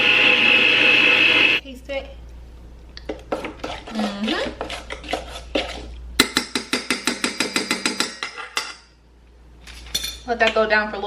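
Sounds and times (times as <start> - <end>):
utensil stirring in a bowl: 3.0 - 8.6.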